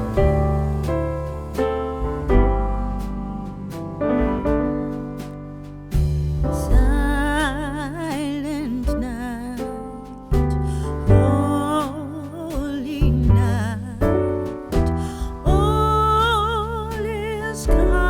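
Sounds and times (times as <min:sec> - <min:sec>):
keyboard or piano chords: 0:00.0 - 0:07.3.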